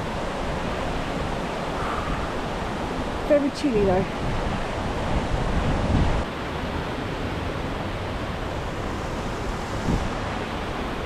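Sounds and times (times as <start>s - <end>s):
waterfall rushing: 0.0s - 11.0s.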